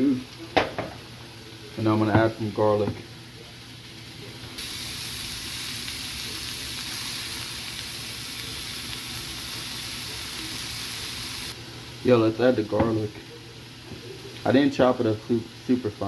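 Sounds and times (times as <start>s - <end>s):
fish sizzling in hot oil: 0.0s - 16.0s.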